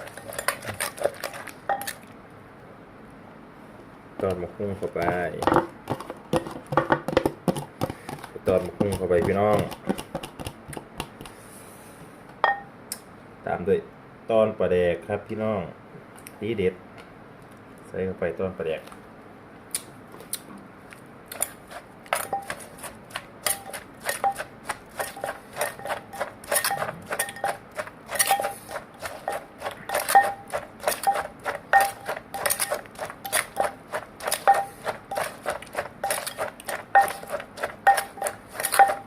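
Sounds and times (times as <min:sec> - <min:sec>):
pestle pounding in a mortar: 0:00.0 - 0:02.0, 0:04.9 - 0:11.4, 0:21.4 - 0:39.0.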